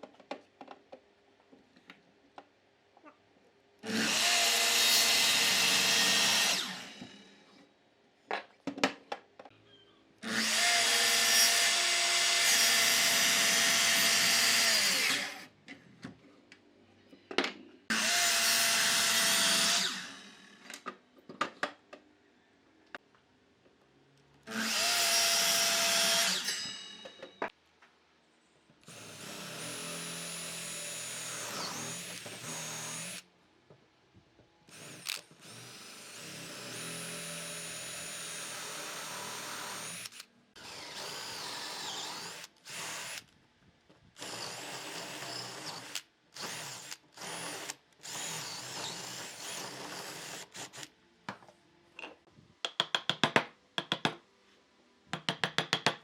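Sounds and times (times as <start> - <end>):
power drill whining: 3.8 - 7.2, 17.9 - 20.7, 28.9 - 33.2, 34.7 - 43.3, 44.2 - 50.9.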